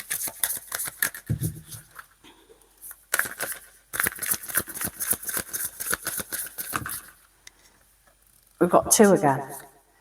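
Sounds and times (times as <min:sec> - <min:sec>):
cards being shuffled: 0:00.0 - 0:02.1, 0:03.0 - 0:07.2.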